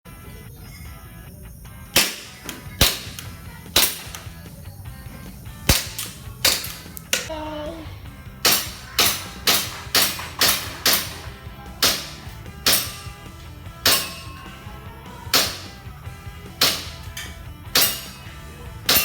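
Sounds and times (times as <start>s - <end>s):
air gun firing: 1.9s - 4.6s, 5.6s - 7.3s, 8.4s - 19.0s.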